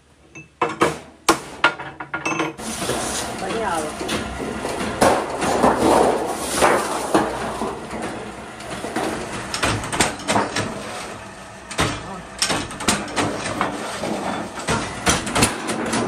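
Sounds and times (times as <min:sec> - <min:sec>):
knocks and clatter on metal parts: 0:00.3 - 0:16.0.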